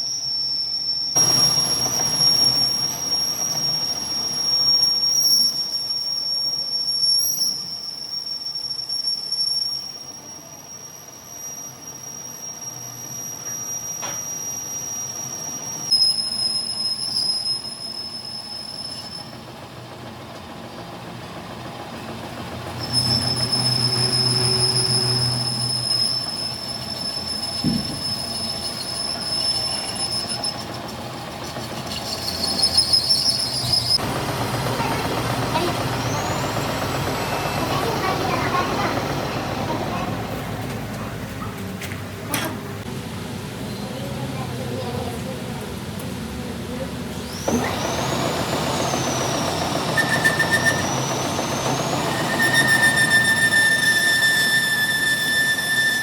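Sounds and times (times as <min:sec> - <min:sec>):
cutting tool squealing: 0:00.0 - 0:19.3, 0:22.7 - 0:40.2, 0:47.3 - 0:56.0
machine running: 0:34.0 - 0:40.7, 0:47.4 - 0:56.0.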